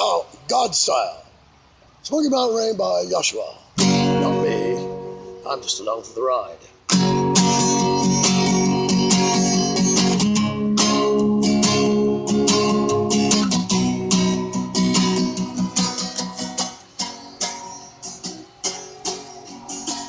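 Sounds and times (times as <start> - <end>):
acoustic guitar playing: 3.8 - 6.2, 6.9 - 20.0.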